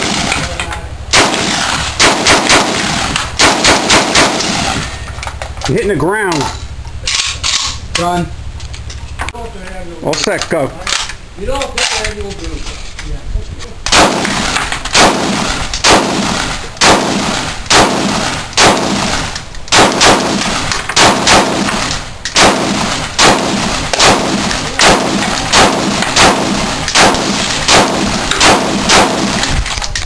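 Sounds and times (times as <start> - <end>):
gunshots with echo: 0.0 - 5.0, 13.9 - 29.6.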